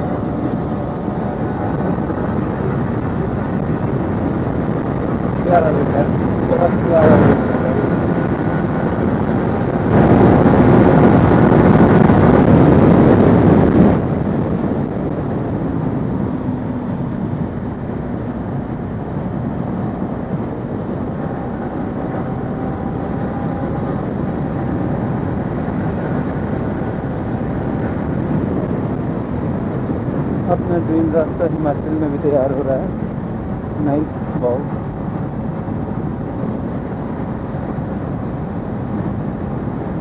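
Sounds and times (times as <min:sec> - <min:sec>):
motorcycle engine running: 0:00.0 - 0:30.4
wind noise on microphone: 0:00.0 - 0:40.0.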